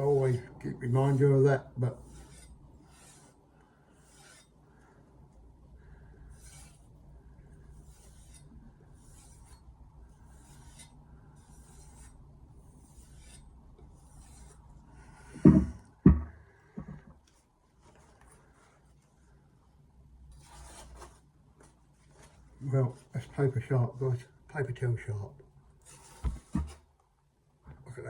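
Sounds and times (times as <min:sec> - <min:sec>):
knife rubbing on leather strop: 0:04.0 - 0:04.5
loud thumps: 0:15.4 - 0:17.0.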